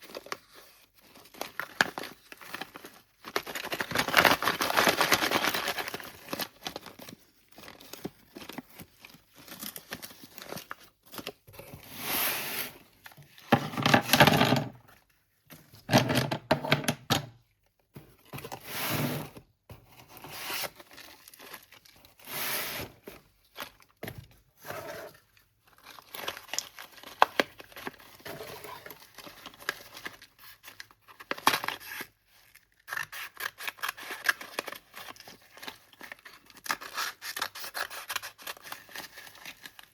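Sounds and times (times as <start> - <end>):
packaging tearing and crinkling: 0.0 - 11.4, 25.1 - 39.9.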